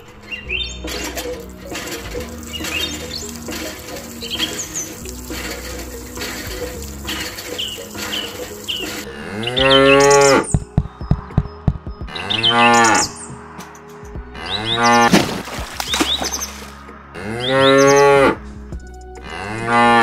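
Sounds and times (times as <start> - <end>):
cattle mooing: 0.9 - 10.6, 17.2 - 18.4, 19.2 - 20.0.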